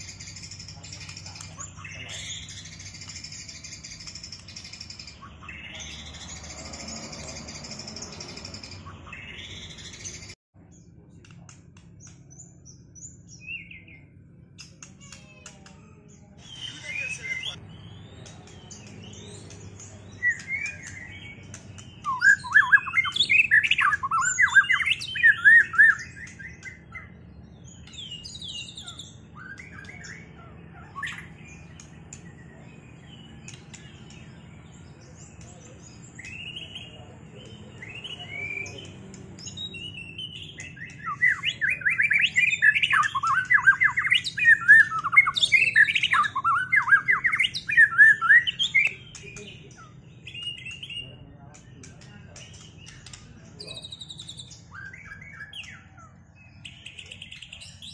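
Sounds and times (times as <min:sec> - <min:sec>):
quieter bird calls: 0:00.0 - 0:57.9
songbird whistled phrases: 0:16.4 - 0:27.2, 0:37.5 - 0:51.2, 0:52.6 - 0:57.9.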